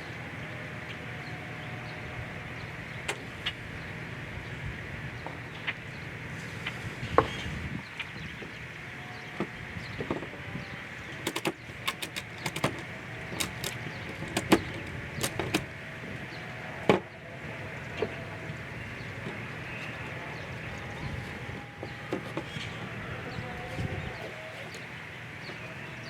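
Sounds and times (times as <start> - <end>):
outdoor background noise: 0.0 - 26.0
ratchet strap clicking: 11.2 - 15.6.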